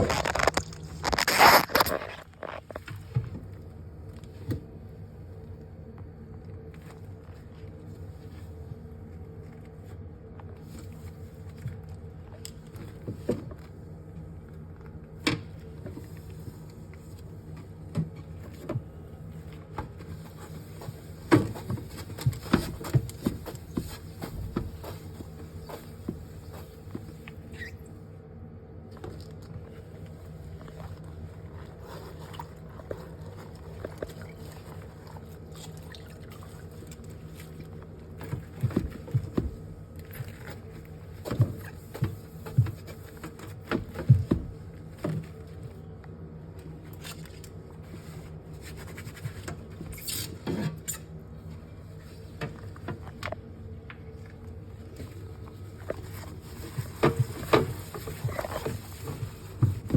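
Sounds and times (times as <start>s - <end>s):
steady low hum: 0.0s - 59.9s
knocks and scrapes of handling: 15.3s - 27.6s, 46.6s - 59.9s.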